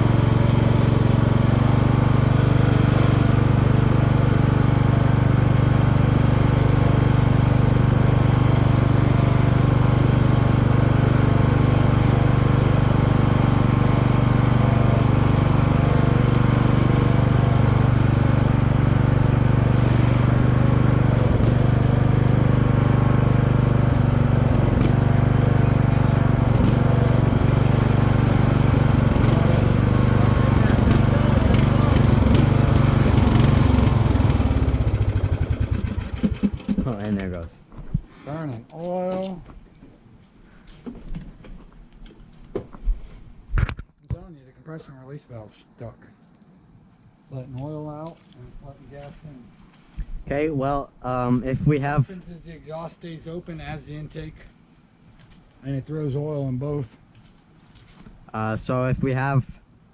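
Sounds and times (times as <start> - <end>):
riding lawn mower engine running: 0.0 - 43.8.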